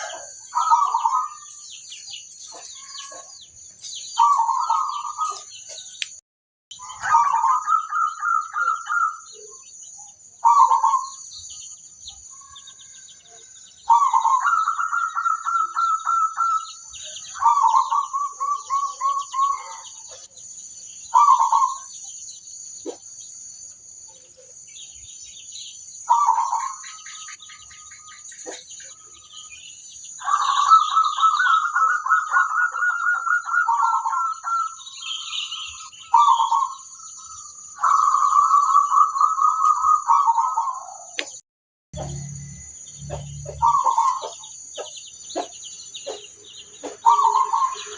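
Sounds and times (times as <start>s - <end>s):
dove cooing: 0.0s - 1.5s, 6.9s - 9.5s, 10.4s - 11.2s, 13.9s - 20.3s, 21.1s - 21.9s, 26.1s - 26.9s, 30.2s - 34.9s, 36.1s - 36.8s, 37.8s - 41.1s, 43.1s - 44.5s, 46.8s - 47.9s.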